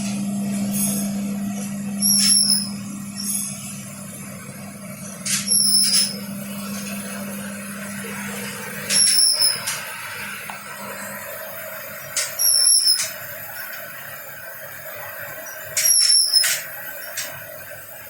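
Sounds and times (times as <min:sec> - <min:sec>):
dishwasher humming: 0:00.0 - 0:18.0
hissing bursts with high squeal: 0:08.9 - 0:09.8, 0:12.4 - 0:13.2.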